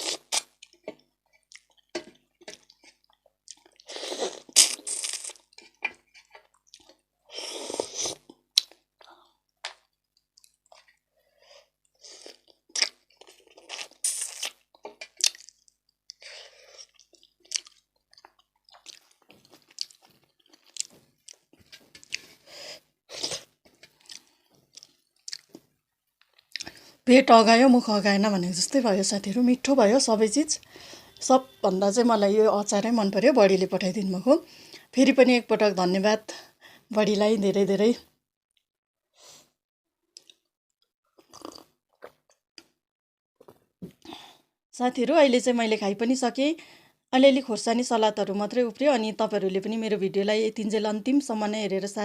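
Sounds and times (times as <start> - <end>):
person chewing food: 0.0 - 27.0, 40.2 - 40.5, 41.1 - 42.8.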